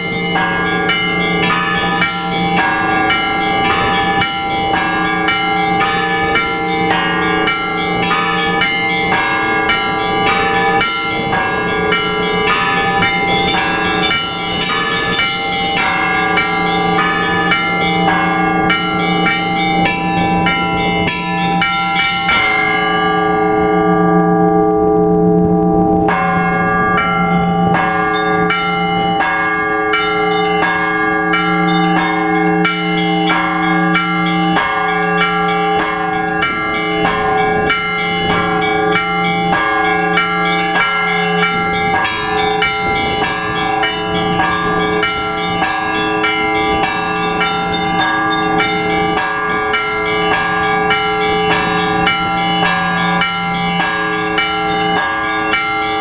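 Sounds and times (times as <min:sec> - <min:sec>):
church bells pealing: 0:00.0 - 0:56.0
deep bell ringing: 0:00.0 - 0:56.0.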